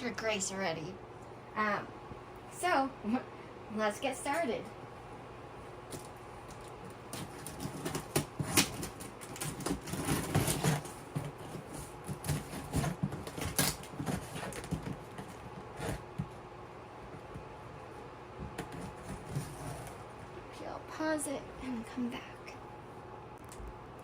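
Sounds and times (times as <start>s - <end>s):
packaging cracks: 5.9s - 16.2s
packaging rustling: 5.9s - 16.4s.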